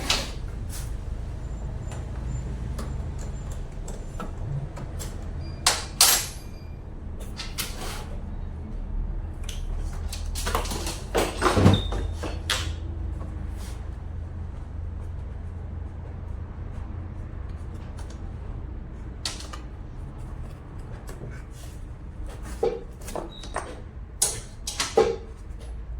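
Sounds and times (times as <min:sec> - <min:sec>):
sharp knocks and clanks: 0:00.0 - 0:07.8, 0:10.0 - 0:13.4, 0:22.3 - 0:25.6.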